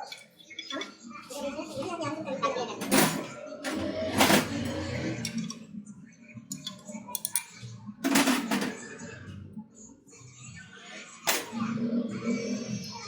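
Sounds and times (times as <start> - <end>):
small metal tools clicking: 6.5 - 7.5.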